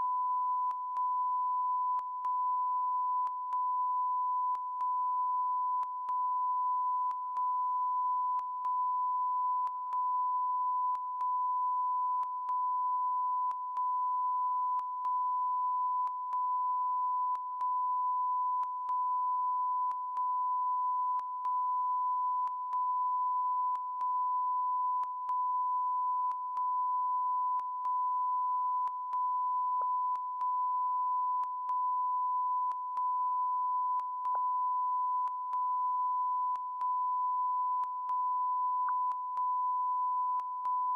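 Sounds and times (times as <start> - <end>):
steady high beep tone: 0.0 - 40.9.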